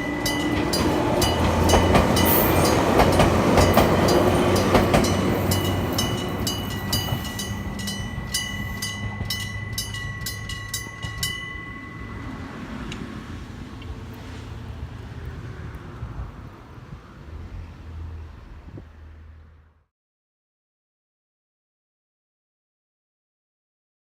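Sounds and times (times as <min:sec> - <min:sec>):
crossing bells ringing rapidly: 0:00.0 - 0:12.8
wheels clicking over rail joints: 0:00.0 - 0:13.1
electric train passing: 0:00.0 - 0:19.5.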